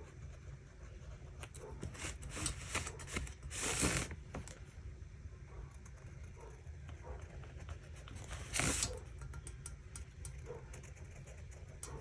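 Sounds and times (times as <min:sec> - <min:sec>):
marker scratching on paper: 0:00.0 - 0:04.1.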